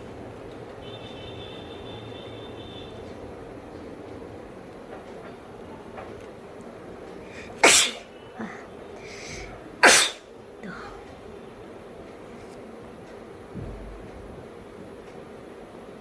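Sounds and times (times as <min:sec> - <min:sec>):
faint breath drawn in: 0:07.3 - 0:07.6, 0:08.4 - 0:09.6
woman sneezing: 0:07.4 - 0:11.0.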